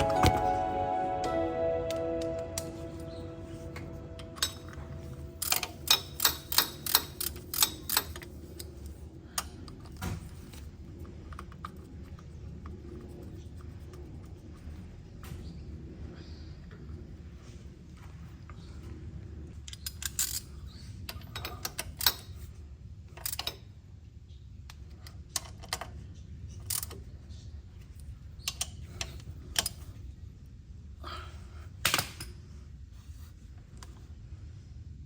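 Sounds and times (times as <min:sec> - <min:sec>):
low steady hum: 0:00.0 - 0:06.6.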